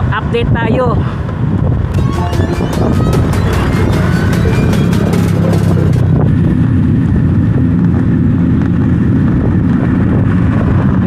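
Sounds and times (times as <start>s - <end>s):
vehicle engine running: 1.9s - 11.0s.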